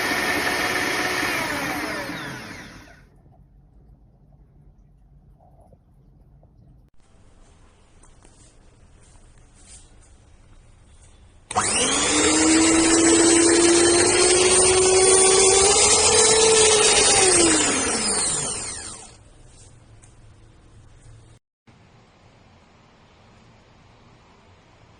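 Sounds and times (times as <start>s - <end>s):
stand mixer motor whining: 0.0s - 3.0s, 11.5s - 19.2s.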